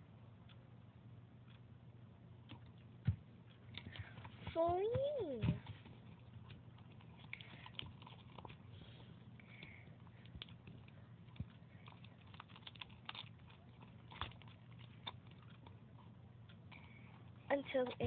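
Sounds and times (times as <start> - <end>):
faint low hum: 0.0 - 18.0
sticky clicks of slime stirring: 9.5 - 18.0.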